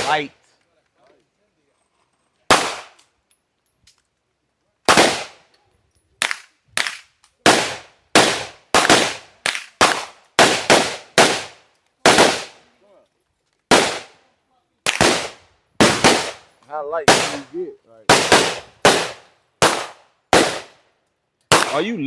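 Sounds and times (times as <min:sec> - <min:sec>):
rapid gunshots: 0:00.0 - 0:00.3, 0:02.5 - 0:03.0, 0:04.9 - 0:05.4, 0:06.8 - 0:12.6, 0:13.7 - 0:14.2, 0:14.9 - 0:16.4, 0:17.1 - 0:17.5, 0:18.1 - 0:20.8, 0:21.5 - 0:21.9.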